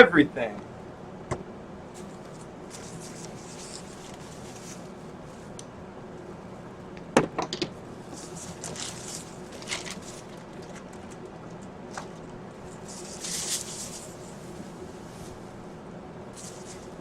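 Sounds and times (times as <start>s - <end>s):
packaging crinkling: 8.2s - 14.4s.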